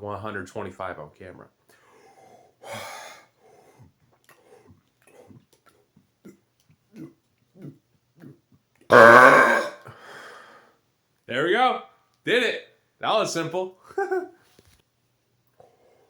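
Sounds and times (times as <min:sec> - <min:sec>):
person gulping air: 0:04.7 - 0:09.8
very loud long burp: 0:08.9 - 0:09.9
breathy intake: 0:08.9 - 0:10.8.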